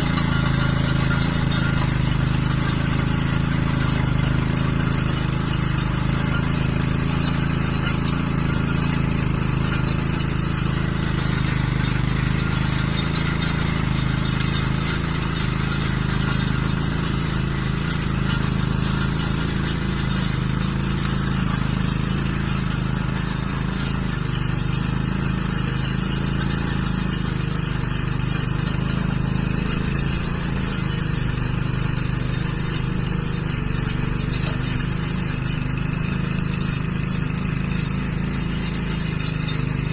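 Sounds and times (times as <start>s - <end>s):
small tiller engine running: 0.0s - 39.9s.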